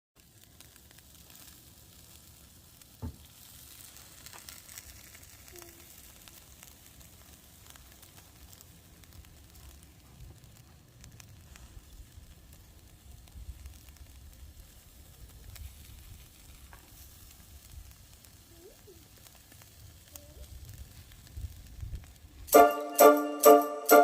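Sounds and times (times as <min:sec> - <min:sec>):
food sizzling on a grill: 0:00.2 - 0:24.0
thump: 0:03.0 - 0:03.2.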